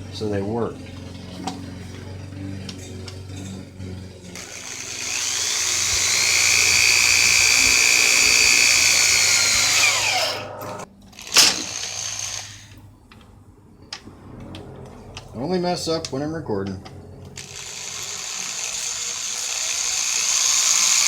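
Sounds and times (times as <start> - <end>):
electric drill whining: 0.8 - 12.8, 17.4 - 21.0.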